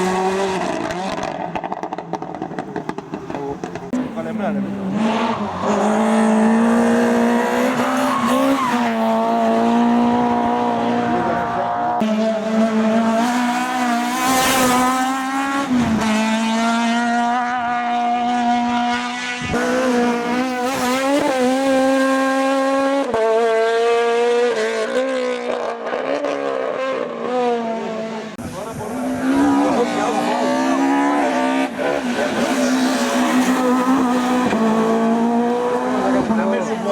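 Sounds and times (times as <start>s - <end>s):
race car engines at high revs: 0.0s - 36.9s.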